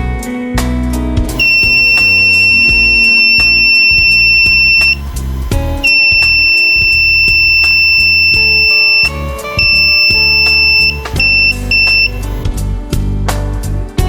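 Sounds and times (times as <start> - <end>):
electronic doorbell buzzer: 1.4 - 12.4.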